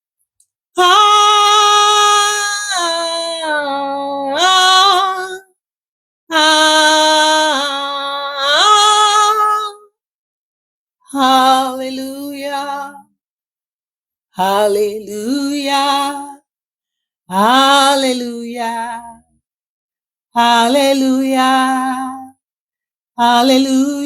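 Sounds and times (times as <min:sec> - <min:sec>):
woman singing unaccompanied: 0:00.7 - 0:05.6, 0:06.3 - 0:10.0, 0:11.1 - 0:13.2, 0:14.4 - 0:16.5, 0:17.3 - 0:19.4, 0:20.3 - 0:22.4, 0:23.2 - 0:24.0.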